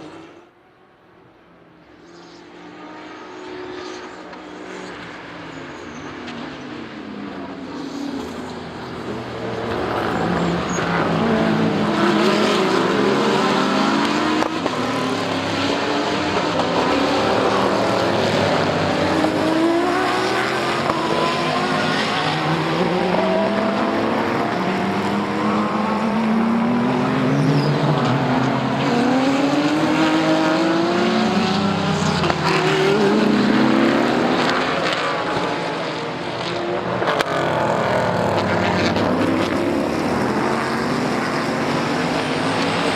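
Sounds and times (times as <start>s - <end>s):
race cars passing at speed: 0.0s - 42.9s.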